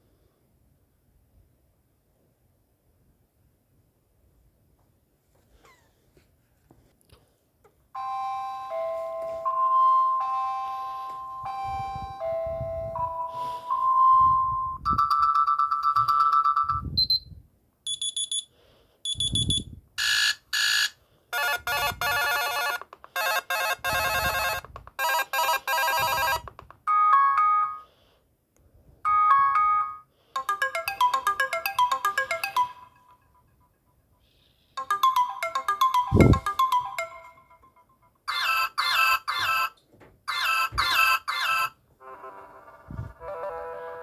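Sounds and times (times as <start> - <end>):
phone beeps and chimes: 8.0 - 17.3, 17.9 - 18.5, 19.1 - 27.8, 29.1 - 33.5, 34.8 - 39.7.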